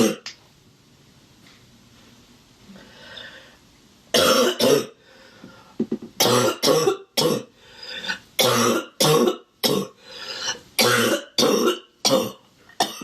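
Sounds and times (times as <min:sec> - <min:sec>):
woman coughing harshly: 0:04.2 - 0:05.0, 0:06.2 - 0:07.5, 0:08.4 - 0:10.0, 0:10.8 - 0:13.0.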